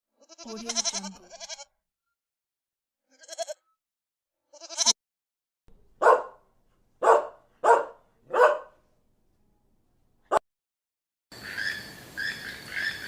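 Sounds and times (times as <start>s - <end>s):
goat bleating: 0.2s - 1.7s, 3.1s - 3.7s, 4.5s - 5.0s
dog barking: 6.0s - 8.9s.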